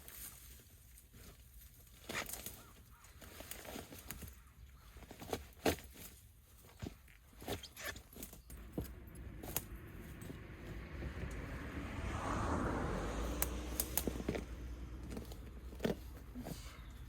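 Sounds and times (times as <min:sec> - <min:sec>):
vehicle passing by: 0:08.5 - 0:17.0.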